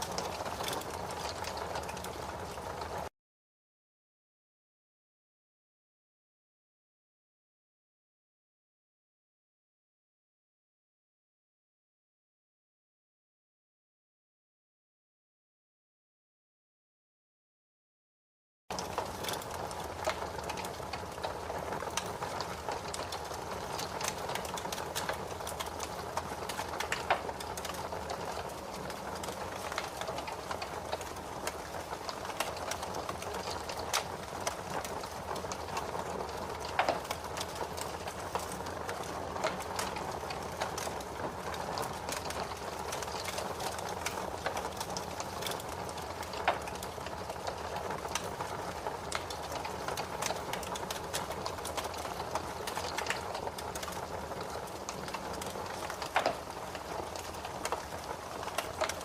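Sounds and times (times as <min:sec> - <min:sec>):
fire crackling: 0:00.0 - 0:03.1, 0:18.7 - 0:59.0
fire popping: 0:00.0 - 0:03.1, 0:18.7 - 0:59.0.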